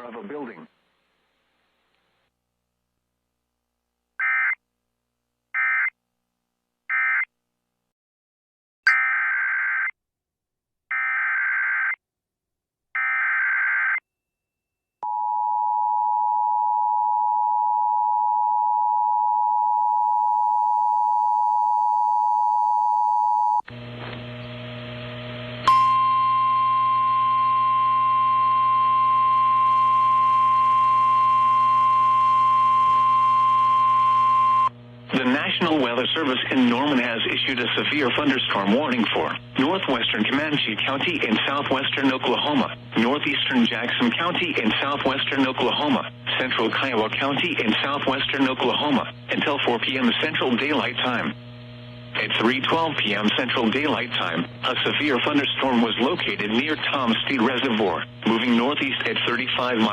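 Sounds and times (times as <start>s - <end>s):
single-pitch warning alarm: 25.6s - 34.8s
humming radio feed: 26.8s - 59.9s.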